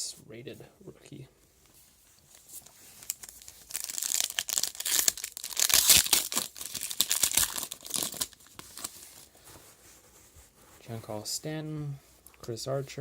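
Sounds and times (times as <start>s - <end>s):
wrapper tearing and crinkling: 2.6s - 9.1s.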